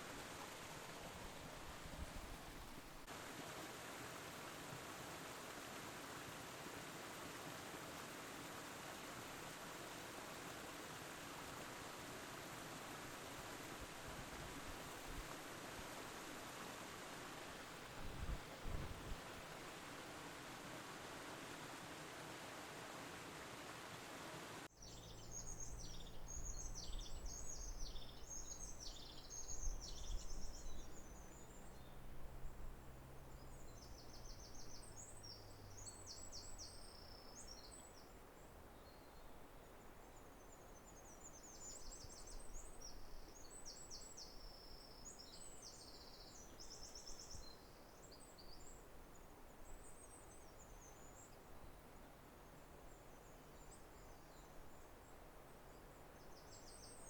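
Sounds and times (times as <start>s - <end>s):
steady hiss: 0.0s - 35.2s
small birds singing: 24.7s - 32.1s, 33.2s - 51.8s, 52.9s - 57.0s.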